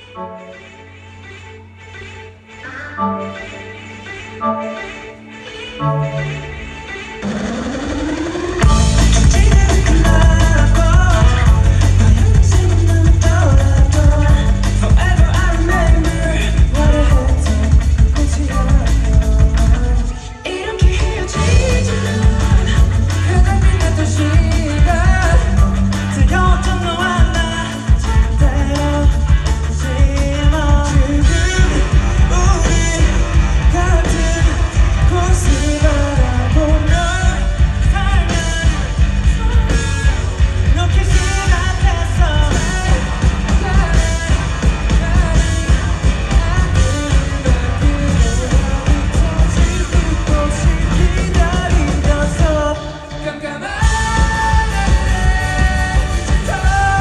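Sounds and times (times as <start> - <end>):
live rock band playing: 1.9 - 57.0
lead vocal singing: 2.6 - 57.0.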